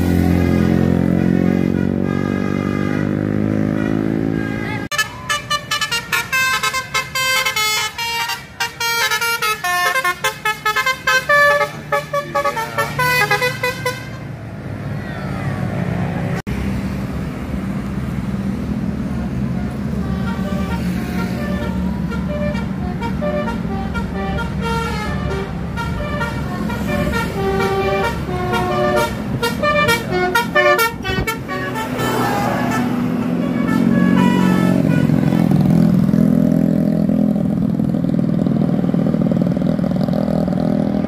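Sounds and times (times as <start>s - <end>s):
bus horn playing a tune: 0.0s - 14.4s, 19.4s - 36.2s
bus engine passing: 0.0s - 41.0s.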